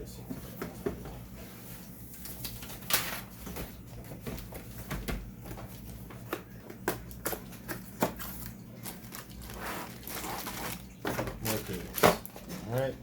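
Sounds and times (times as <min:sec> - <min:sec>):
packaging clicking and knocking: 0:06.2 - 0:12.7.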